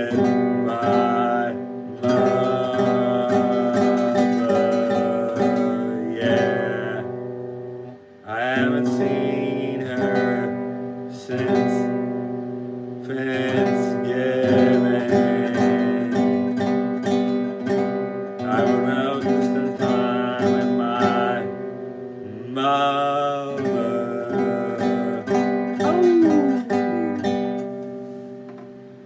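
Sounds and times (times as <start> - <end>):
acoustic guitar strumming chords: 0.0 - 29.0
held vocal note: 18.4 - 28.0.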